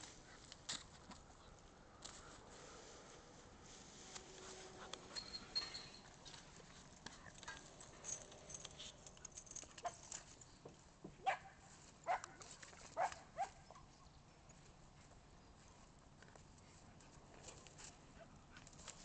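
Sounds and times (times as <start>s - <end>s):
dog barking: 11.2s - 12.4s, 13.0s - 13.6s.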